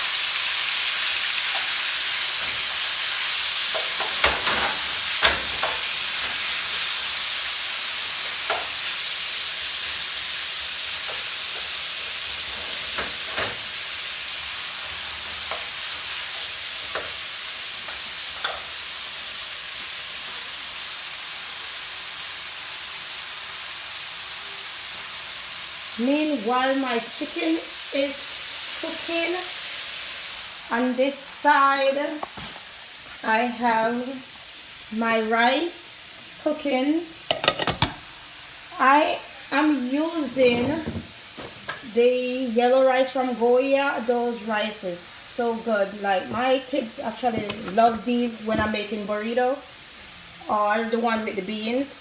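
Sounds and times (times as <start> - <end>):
chicken sizzling in oil: 0.0 - 52.0
utensil knocking against pot: 37.3 - 38.0.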